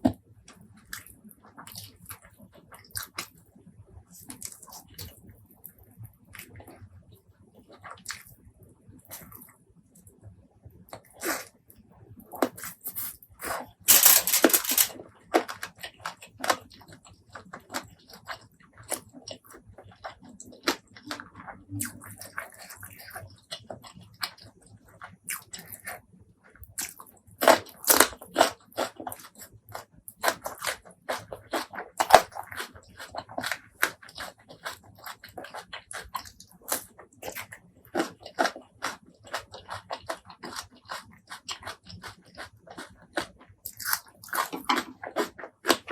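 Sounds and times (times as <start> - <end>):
crunchy bites: 12.4 - 16.7, 26.8 - 45.9
wet chewing: 26.7 - 45.9.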